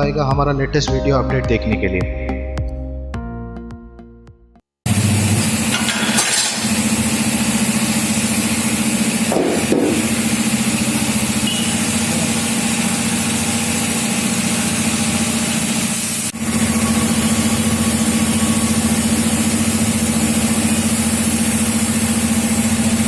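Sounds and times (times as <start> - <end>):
motor running steadily: 4.9 - 23.0.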